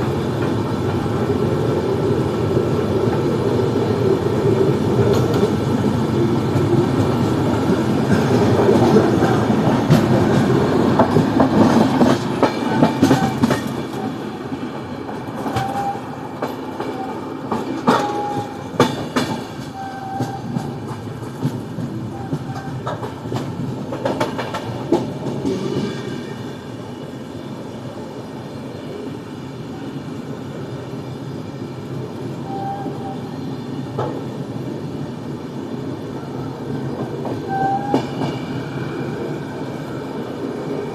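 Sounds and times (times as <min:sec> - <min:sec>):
train wheels clattering over rails: 0:04.5 - 0:26.8, 0:36.7 - 0:38.8.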